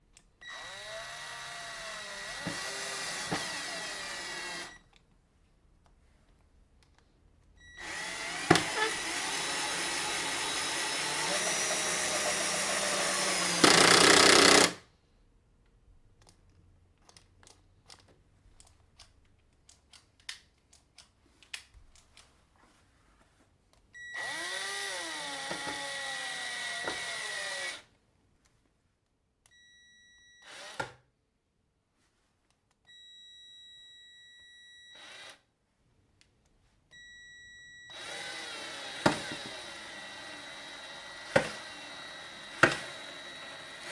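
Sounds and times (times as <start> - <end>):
cordless drill driving screws: 0.4 - 4.8, 7.8 - 14.8, 24.2 - 27.9, 30.4 - 31.0, 34.9 - 35.4, 37.9 - 43.9.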